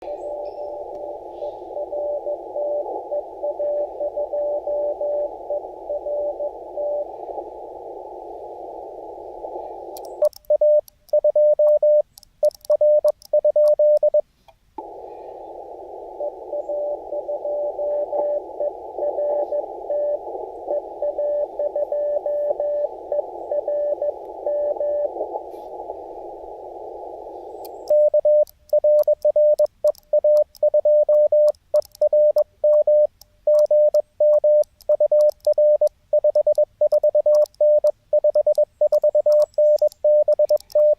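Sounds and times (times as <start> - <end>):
faint received morse signals: 0.0 - 40.9
radio receiver hiss: 0.0 - 40.9
loud morse code tone: 16.2 - 25.1, 27.9 - 40.9.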